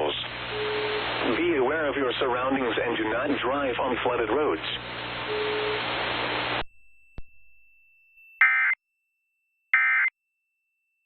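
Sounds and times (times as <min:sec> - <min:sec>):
static hiss: 0:00.0 - 0:02.7, 0:04.5 - 0:06.6.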